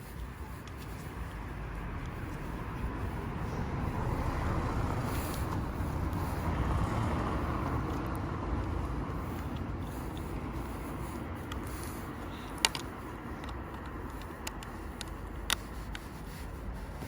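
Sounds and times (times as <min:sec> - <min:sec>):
outdoor background rumble: 0:00.0 - 0:17.0
plastic parts ticking and clicking: 0:11.5 - 0:16.0.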